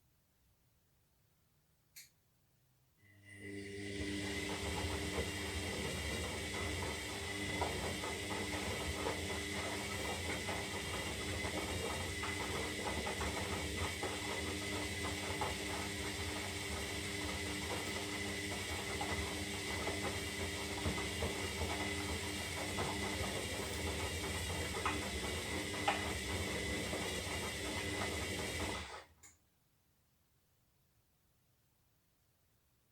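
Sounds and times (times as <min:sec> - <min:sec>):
washing machine motor hum: 0:03.2 - 0:29.2.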